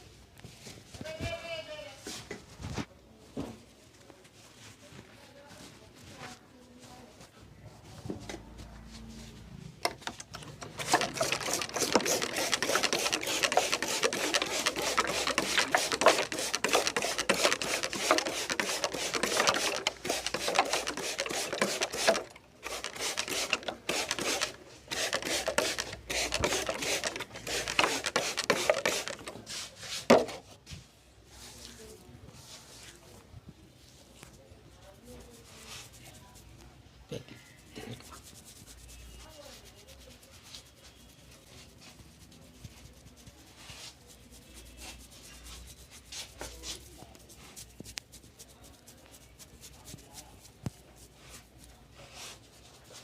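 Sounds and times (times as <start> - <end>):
hair crackling under massaging hands: 10.2 - 29.5, 37.6 - 53.0.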